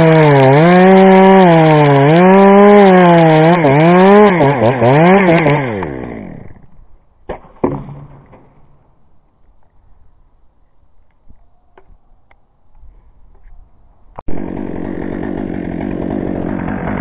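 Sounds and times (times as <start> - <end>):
chainsaw running at high revs: 0.0 - 6.7, 14.3 - 17.0
sharp knocks: 7.3 - 8.7.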